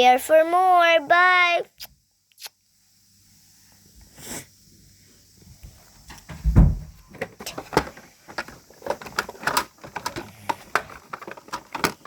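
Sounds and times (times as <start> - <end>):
handling clicks and knocks: 6.1 - 12.0
heavy low thump: 6.3 - 7.0.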